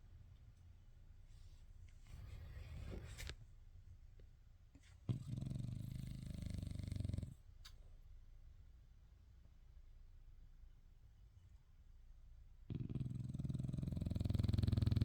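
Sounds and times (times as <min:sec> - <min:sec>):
dog snoring: 0:05.1 - 0:07.4, 0:12.7 - 0:15.0.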